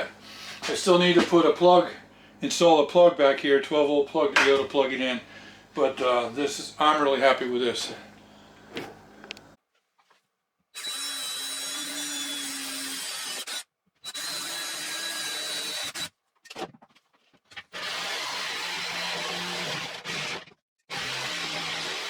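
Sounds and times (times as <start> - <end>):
power tool cutting wood: 10.8 - 16.1, 17.7 - 22.0.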